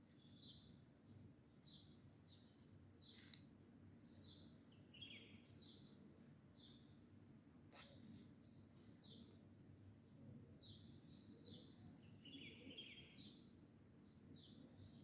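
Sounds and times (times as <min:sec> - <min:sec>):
faint bird chirps: 0:10.6 - 0:15.0.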